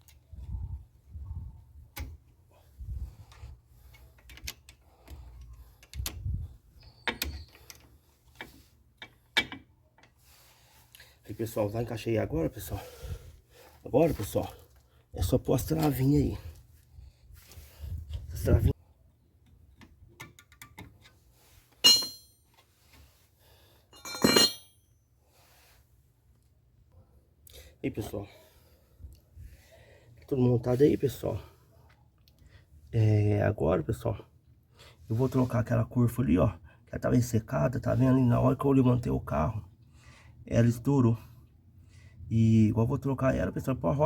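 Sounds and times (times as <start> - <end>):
metal clicks of brake springs: 3.9 - 6.2
metal brake parts clinking: 21.8 - 22.5, 23.9 - 24.9.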